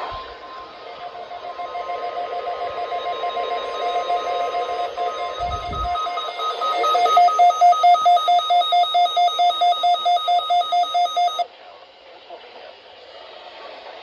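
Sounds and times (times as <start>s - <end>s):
rapid electronic alert beeping: 0.8s - 11.4s.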